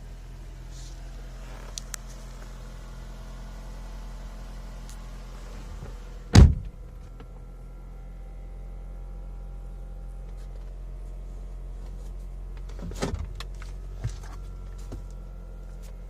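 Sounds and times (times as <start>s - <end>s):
steady low hum: 0.0s - 16.0s
loud short thud: 6.3s - 7.0s.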